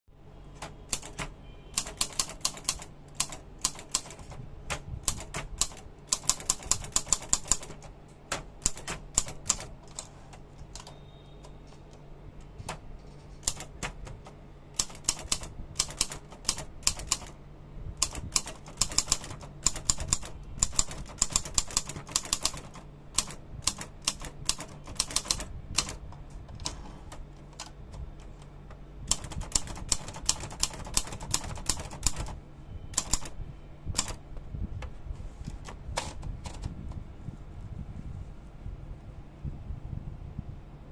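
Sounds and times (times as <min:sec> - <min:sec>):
steady low hum: 0:00.1 - 0:40.9
typewriter key strikes: 0:00.6 - 0:04.4, 0:05.0 - 0:10.1, 0:13.4 - 0:17.3, 0:18.0 - 0:26.0, 0:29.1 - 0:32.4, 0:33.0 - 0:33.3, 0:34.0 - 0:34.2.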